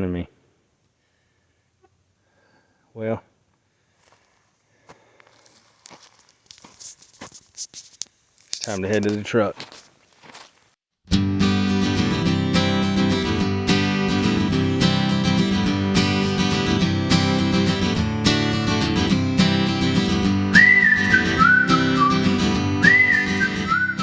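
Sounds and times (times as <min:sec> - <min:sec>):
acoustic guitar strumming: 0:11.1 - 0:24.0
whistled melody: 0:20.5 - 0:24.0.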